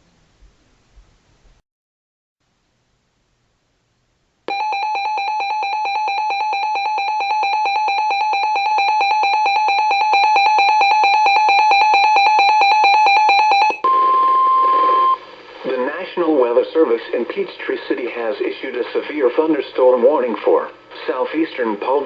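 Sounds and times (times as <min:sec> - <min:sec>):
rapidly pulsing alarm beep: 0:04.5 - 0:15.2.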